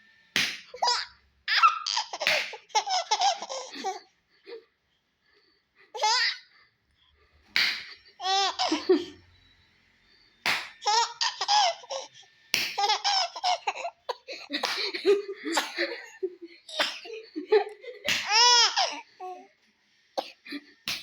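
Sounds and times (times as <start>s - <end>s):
young child laughing: 12.8s - 19.4s
child coughing harshly: 15.5s - 16.0s, 16.7s - 17.1s, 20.2s - 20.5s.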